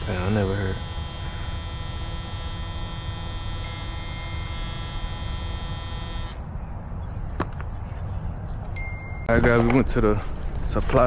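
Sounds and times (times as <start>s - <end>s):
furnace motor humming: 0.0s - 6.4s.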